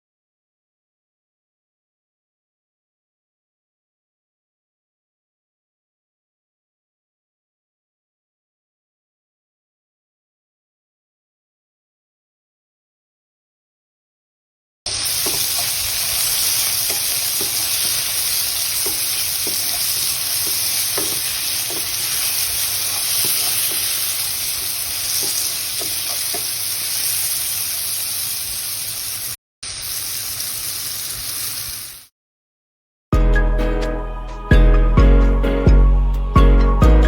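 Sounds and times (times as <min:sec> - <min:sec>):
vegetables sizzling in a pan: 0:14.9 - 0:32.1.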